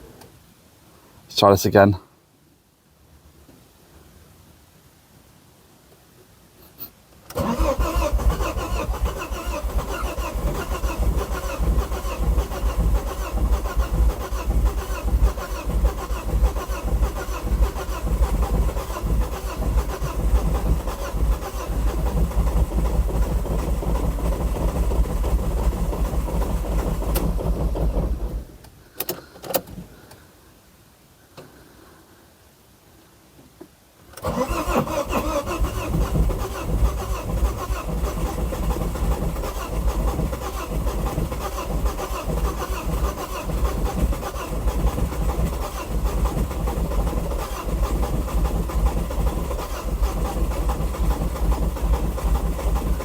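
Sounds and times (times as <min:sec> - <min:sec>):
car engine cranking by starter: 0:07.2 - 0:30.1, 0:34.1 - 0:53.0.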